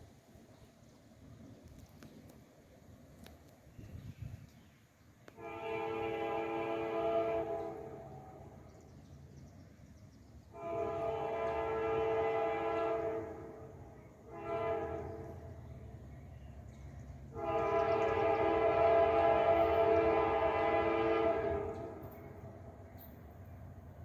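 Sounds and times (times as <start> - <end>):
passing train rumble: 5.1 - 24.0
locomotive air horn blasts: 5.3 - 8.7, 10.5 - 16.0, 17.2 - 22.7.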